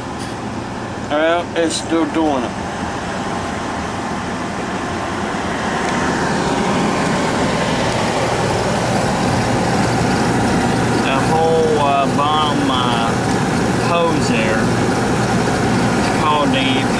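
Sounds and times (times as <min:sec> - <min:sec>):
oil furnace burner and blower: 0:00.0 - 0:16.9.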